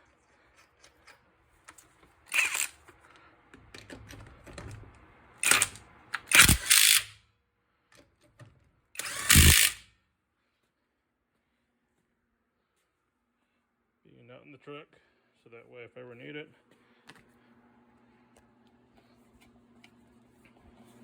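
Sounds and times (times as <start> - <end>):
impact wrench bursts: 2.3 - 2.8, 5.4 - 7.2, 9.0 - 9.9.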